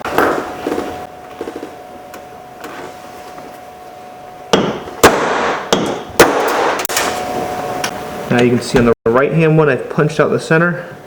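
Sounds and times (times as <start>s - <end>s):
hammer striking a punch: 4.5s - 7.0s.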